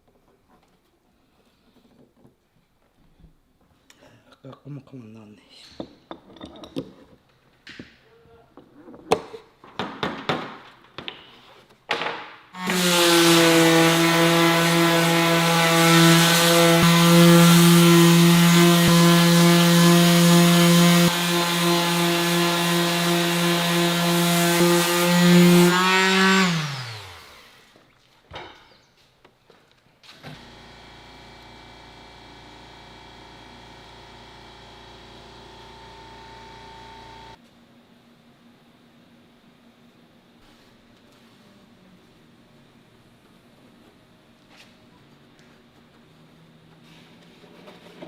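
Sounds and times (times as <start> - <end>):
power tool cutting wood: 12.6 - 27.7, 30.1 - 37.4.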